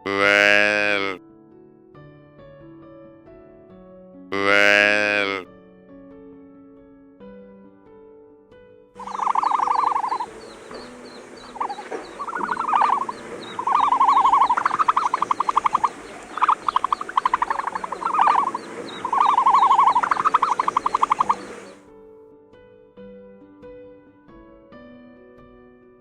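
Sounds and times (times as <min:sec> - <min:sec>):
animal calling with buzzy trills: 0:00.0 - 0:01.2, 0:04.4 - 0:05.4, 0:09.0 - 0:21.8
chorus of high-pitched chirps: 0:00.0 - 0:01.2, 0:04.4 - 0:05.4, 0:09.0 - 0:21.8.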